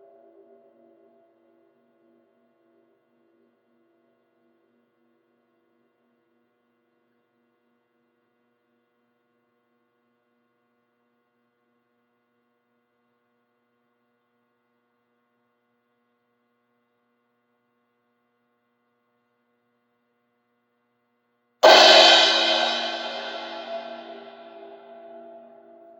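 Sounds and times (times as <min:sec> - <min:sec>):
cymbal ringing: 0:21.6 - 0:25.8.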